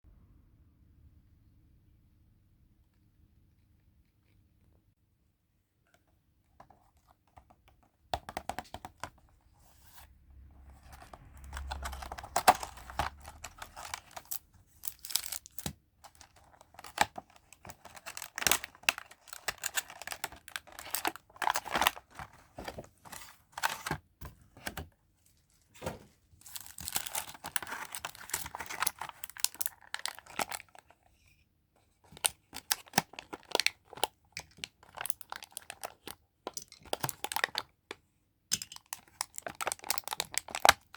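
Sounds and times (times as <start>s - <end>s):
packaging tearing and crinkling: 10.9s - 23.9s, 26.4s - 30.8s, 32.1s - 36.2s, 39.2s - 40.9s.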